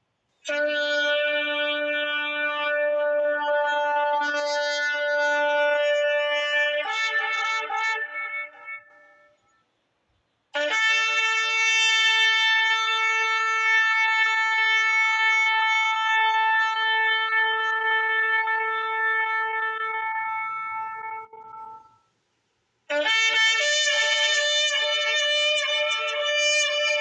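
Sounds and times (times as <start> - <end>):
shofar blast: 0.5 - 9.4, 10.6 - 22.1, 22.9 - 27.0.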